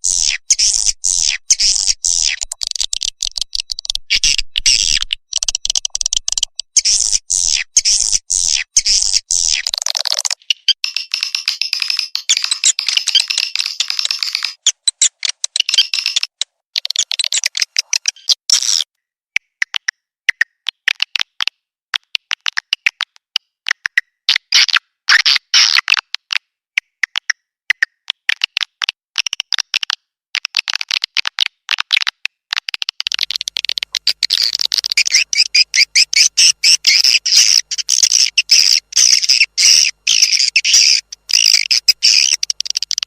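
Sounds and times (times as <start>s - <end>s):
swiftlets chirping and twittering: 0.0s - 16.4s, 33.9s - 43.0s.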